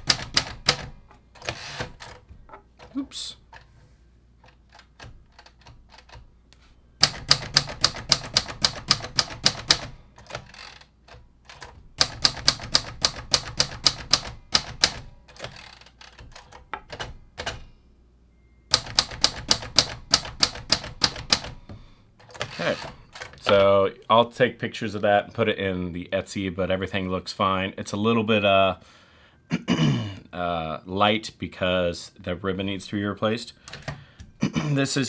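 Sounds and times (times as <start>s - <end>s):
manual typewriter typing: 0.0s - 3.8s, 4.4s - 17.7s, 18.7s - 23.9s, 33.6s - 34.3s.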